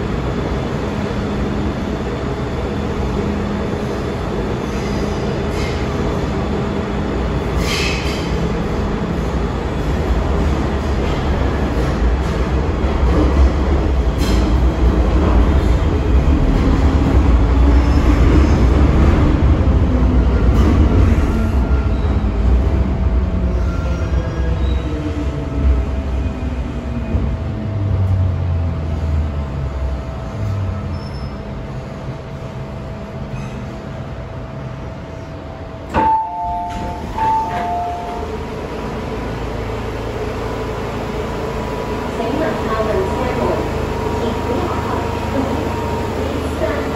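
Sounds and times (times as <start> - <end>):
train wheels rumbling on track: 0.0 - 46.9
two-tone train chime: 35.9 - 38.6.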